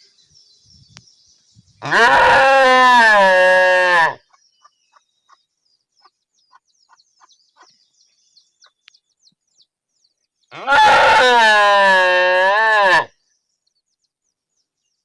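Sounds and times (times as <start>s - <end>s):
small birds chirping: 0.0s - 2.5s, 3.6s - 10.6s, 13.1s - 15.0s.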